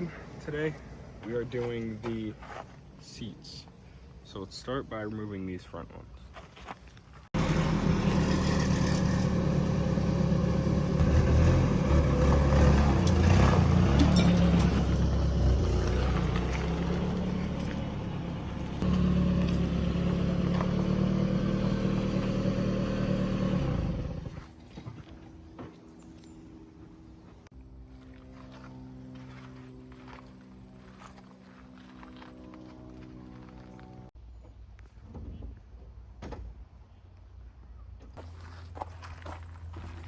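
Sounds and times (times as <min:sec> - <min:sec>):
engine running: 0:07.4 - 0:25.7, 0:26.8 - 0:34.2.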